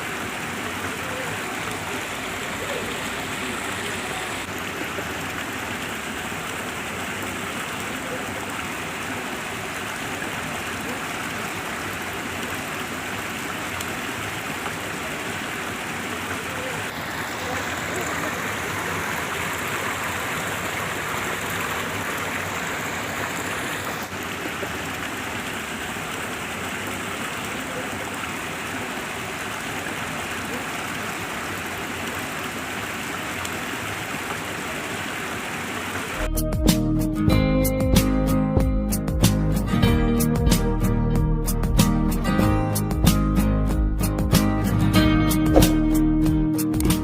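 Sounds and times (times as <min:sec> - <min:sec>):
stream water flowing: 0:00.0 - 0:36.3, 0:44.6 - 0:47.0.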